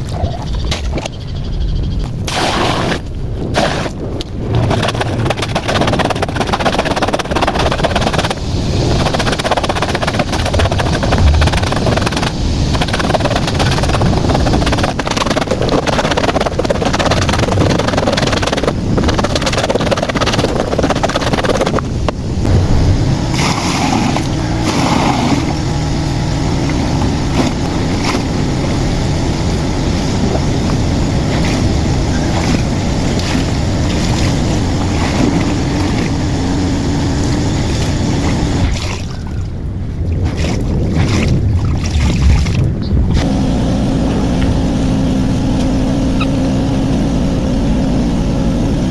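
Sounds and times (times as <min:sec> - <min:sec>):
water and clothes sloshing: 0:22.5 - 0:25.7, 0:29.9 - 0:42.8.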